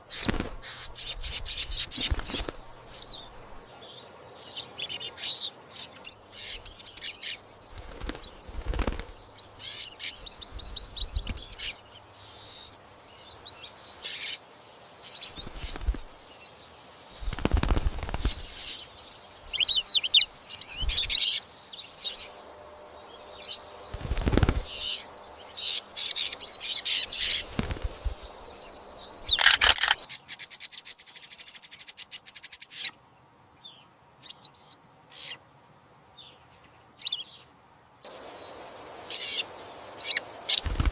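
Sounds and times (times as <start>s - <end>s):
finch chirping: 0.0s - 12.8s, 17.2s - 22.4s, 23.1s - 32.9s, 38.1s - 40.9s.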